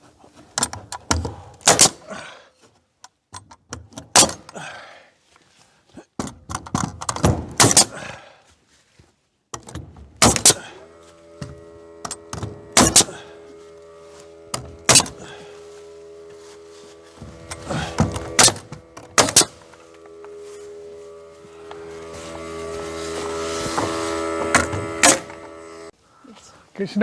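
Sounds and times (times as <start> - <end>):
machine hum: 9.6 - 26.2.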